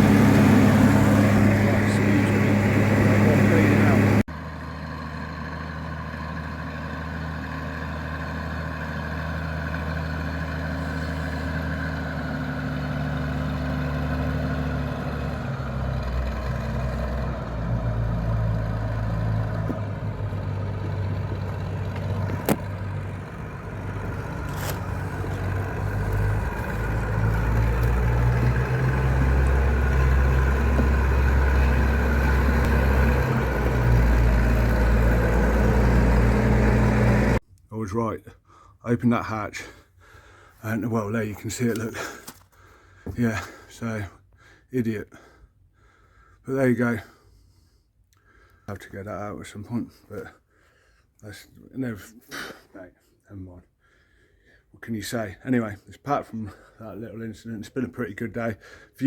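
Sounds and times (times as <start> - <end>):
combine harvester running: 0.0 - 37.4.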